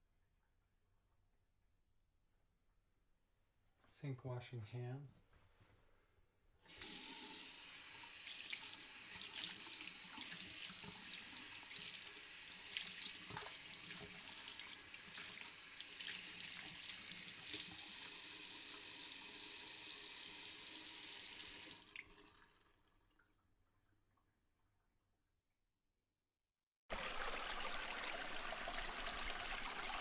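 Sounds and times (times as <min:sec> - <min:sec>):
tap water running into sink: 0:06.7 - 0:22.6, 0:26.9 - 0:30.0.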